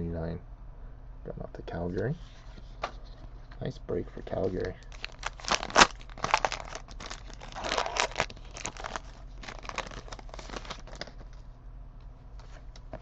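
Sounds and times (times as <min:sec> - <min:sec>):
foil wrapper crinkling: 0:04.8 - 0:11.4.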